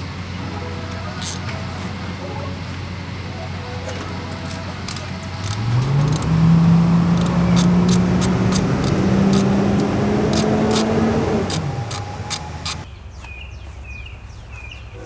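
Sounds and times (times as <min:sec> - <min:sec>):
motor running steadily: 0:00.0 - 0:12.9
sharp ticks: 0:04.9 - 0:12.9.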